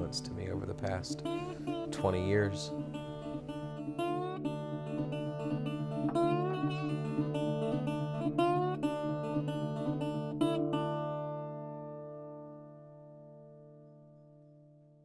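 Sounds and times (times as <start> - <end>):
acoustic guitar picked folk style: 0.0 - 14.9.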